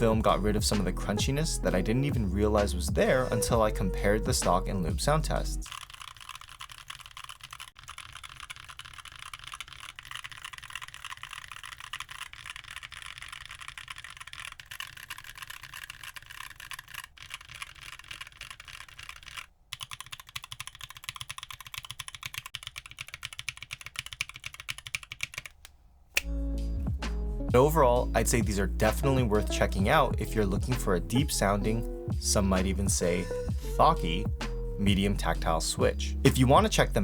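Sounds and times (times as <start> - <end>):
fast typing on mechanical keyboard: 5.7 - 25.6.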